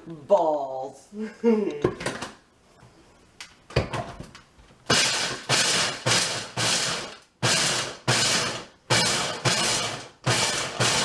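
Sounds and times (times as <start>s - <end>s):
blender grinding bursts: 4.9s - 11.0s.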